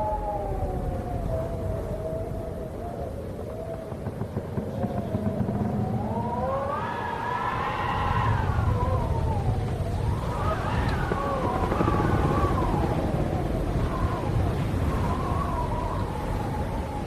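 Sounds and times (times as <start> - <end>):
wind howling: 0.0 - 17.0
low rumble: 3.8 - 15.0.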